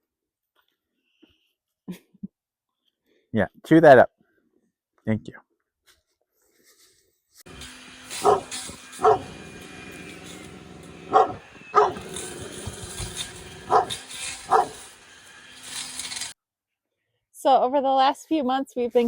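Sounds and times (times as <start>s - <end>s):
dog barking: 8.1s - 14.9s.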